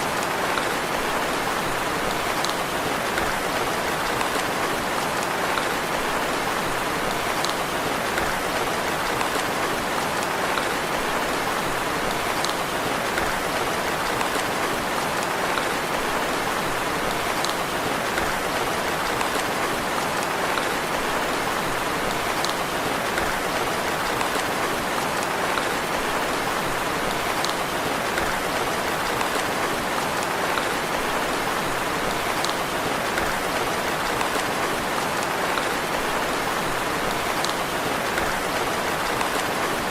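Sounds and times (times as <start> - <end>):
gentle rain falling: 0.0 - 39.9.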